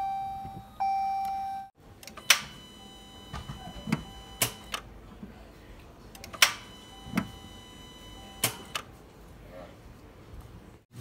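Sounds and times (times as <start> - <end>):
electronic dashboard tones: 0.0 - 4.8, 6.4 - 8.8.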